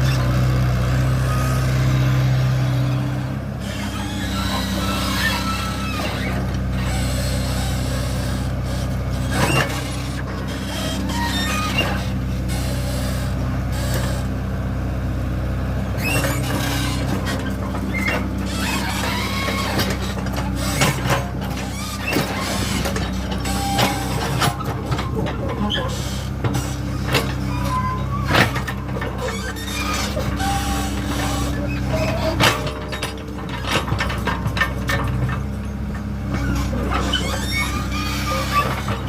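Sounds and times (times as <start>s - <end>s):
excavator diesel engine: 0.0s - 39.0s
high squeals: 3.7s - 6.4s, 16.0s - 32.8s.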